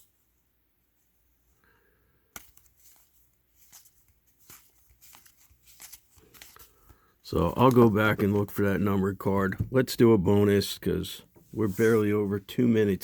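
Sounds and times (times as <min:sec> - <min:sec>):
trading cards clicking and rustling: 0:02.3 - 0:08.6.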